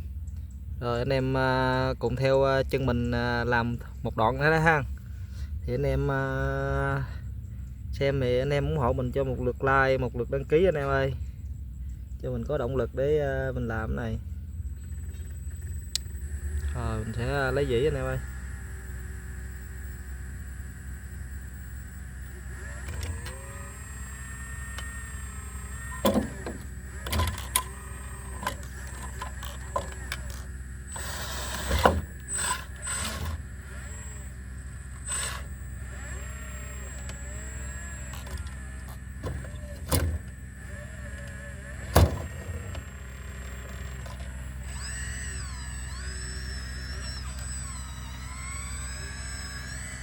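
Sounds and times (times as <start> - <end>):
hydraulic whine: 0.0 - 50.0
excavator diesel engine running: 13.0 - 50.0.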